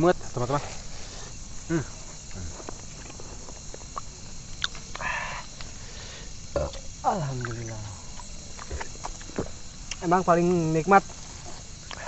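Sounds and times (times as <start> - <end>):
steady outdoor hiss: 0.0 - 12.0
eating clicks: 2.2 - 5.8.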